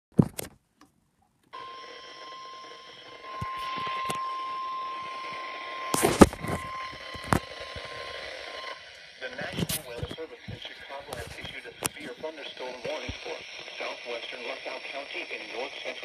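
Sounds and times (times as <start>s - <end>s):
static hiss: 8.6s - 16.0s.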